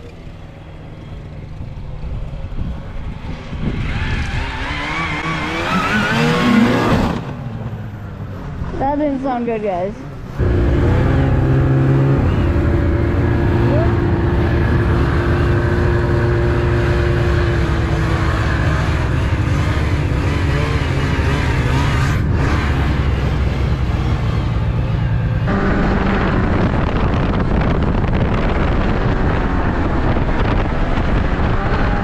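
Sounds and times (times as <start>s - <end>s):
snowmobile engine running: 8.7s - 32.0s.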